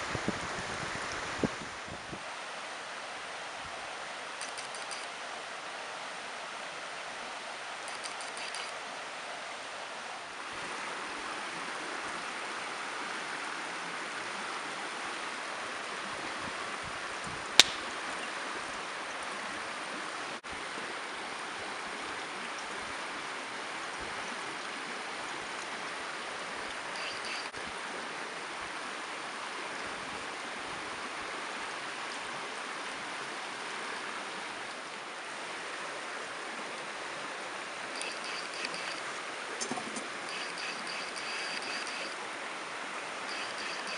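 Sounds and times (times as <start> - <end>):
mountain stream rushing: 0.0 - 43.9
sharp snap: 17.6 - 17.9.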